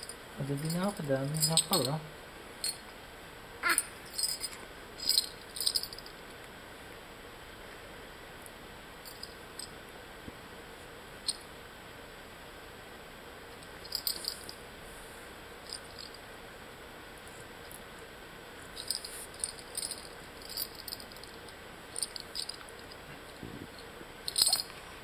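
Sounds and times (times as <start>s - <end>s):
small hard objects rattling: 18.8s - 23.0s.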